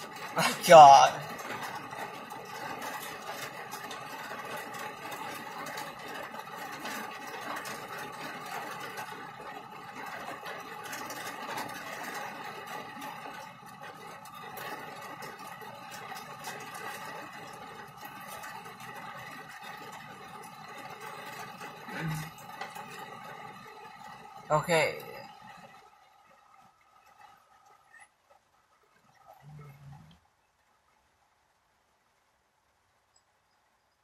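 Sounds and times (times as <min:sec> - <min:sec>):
heavy rain on car roof: 0:00.0 - 0:32.9
low hum: 0:08.2 - 0:32.0.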